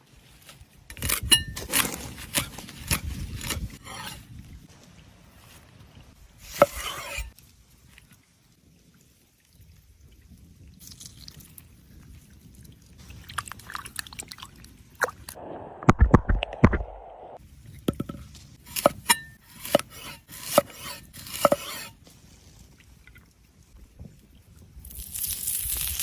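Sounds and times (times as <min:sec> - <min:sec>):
food scraping: 0:06.4 - 0:07.4
liquid sounds: 0:07.3 - 0:17.4.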